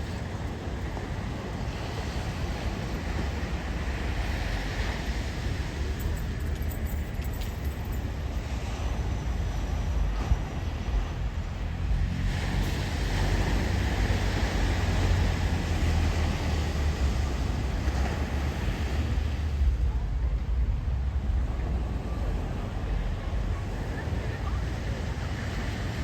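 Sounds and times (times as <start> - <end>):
ocean waves washing in: 0.0 - 26.0
wind rumble on microphone: 0.0 - 26.0.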